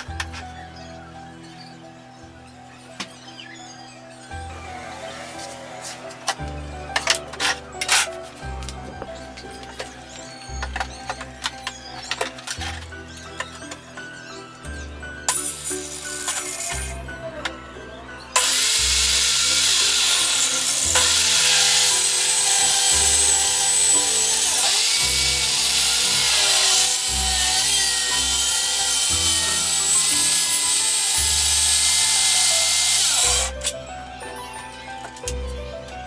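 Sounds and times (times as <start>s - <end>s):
power tool cutting wood: 4.3s - 9.2s, 15.3s - 17.3s, 18.3s - 33.8s.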